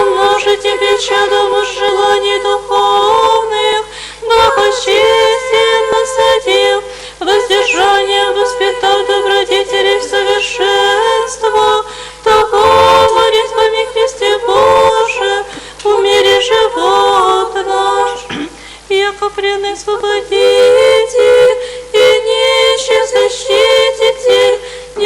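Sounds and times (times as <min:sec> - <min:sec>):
choir chanting a cappella: 0:00.0 - 0:25.0.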